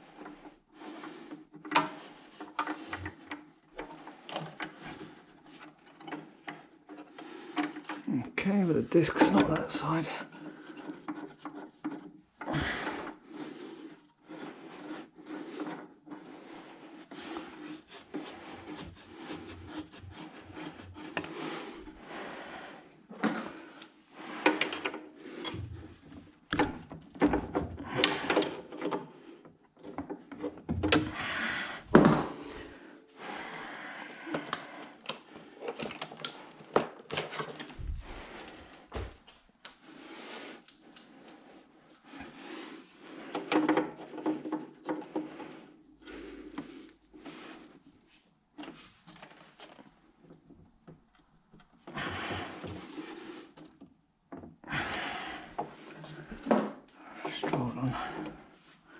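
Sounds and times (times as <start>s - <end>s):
wood and tools knocking: 31.8s - 32.8s.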